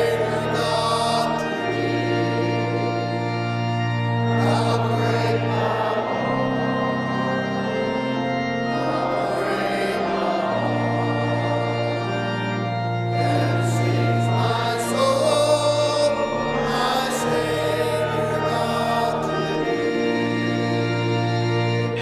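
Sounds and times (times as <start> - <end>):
church organ chords: 0.0 - 22.0.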